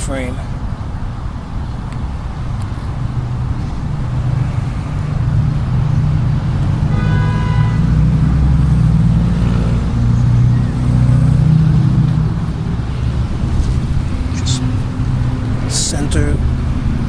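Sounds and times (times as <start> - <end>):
traffic rumbling: 0.0 - 17.0
short horn tone: 6.9 - 7.9.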